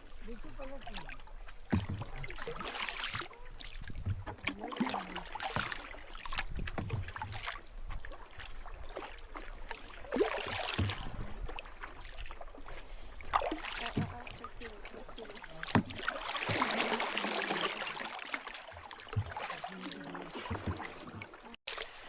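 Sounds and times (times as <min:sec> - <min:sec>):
paddle splashing in water: 0:00.0 - 0:22.0.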